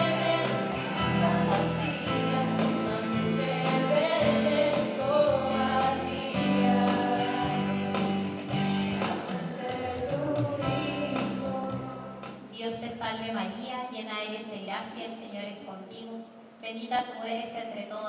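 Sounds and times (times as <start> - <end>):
person singing devotional song: 0.0 - 12.3
guitar accompaniment: 0.0 - 12.5.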